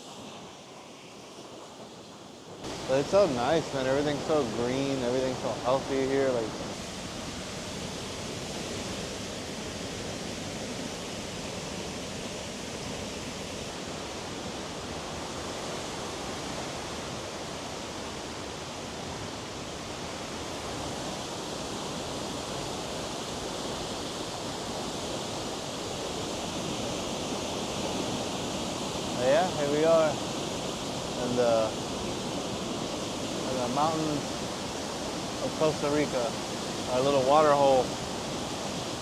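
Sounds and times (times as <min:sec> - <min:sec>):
waterfall rushing: 0:02.6 - 0:16.4, 0:21.2 - 0:39.0.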